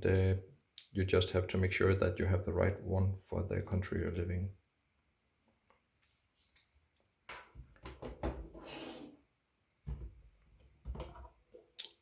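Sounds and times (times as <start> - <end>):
knocks and clunks on tabletop: 7.3 - 8.6, 9.9 - 11.4.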